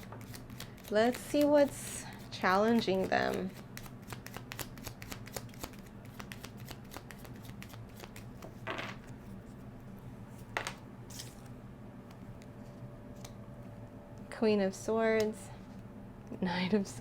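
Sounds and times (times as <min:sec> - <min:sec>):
cards shuffling clicks: 0:00.0 - 0:09.2
cards sliding swishes: 0:03.8 - 0:08.4, 0:11.1 - 0:11.5.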